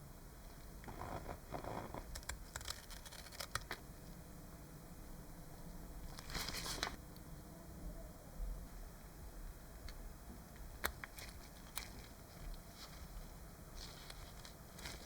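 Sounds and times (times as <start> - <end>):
rustling and scraping of model parts: 0.9 - 3.7, 6.1 - 7.0, 11.1 - 15.0.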